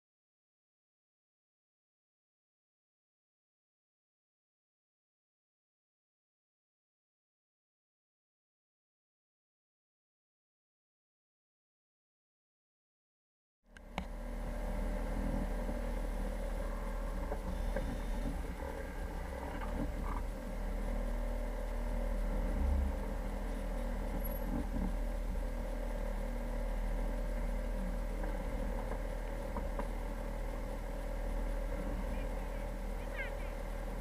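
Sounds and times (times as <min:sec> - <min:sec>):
motor engine humming: 0:13.7 - 0:34.0.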